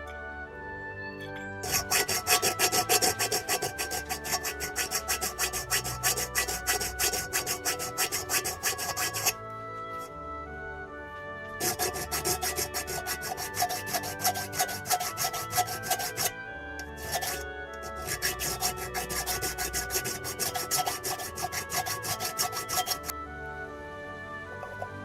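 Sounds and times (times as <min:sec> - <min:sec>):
soft background music: 0:00.0 - 0:25.0
hand file on metal spout: 0:01.6 - 0:09.4, 0:11.6 - 0:23.1, 0:24.6 - 0:24.9.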